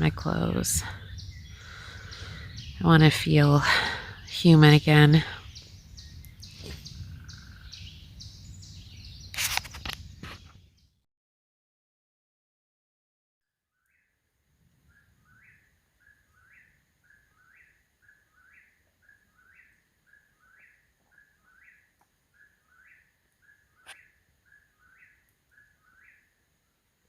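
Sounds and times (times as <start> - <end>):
faint bird calling: 0.8 - 2.9, 14.8 - 26.4.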